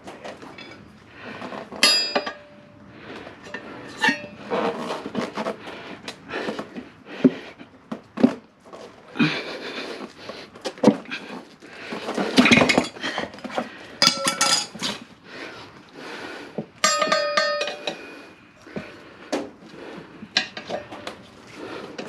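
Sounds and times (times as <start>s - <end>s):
sharp metallic clank: 1.8s - 2.6s, 16.8s - 18.0s
tire levers scraping metal rim: 3.4s - 5.6s.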